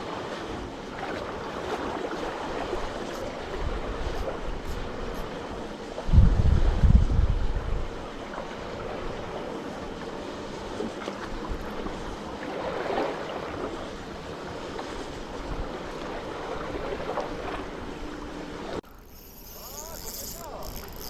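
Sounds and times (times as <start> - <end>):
sea waves washing: 0.0 - 21.0
wind on microphone: 6.0 - 8.1.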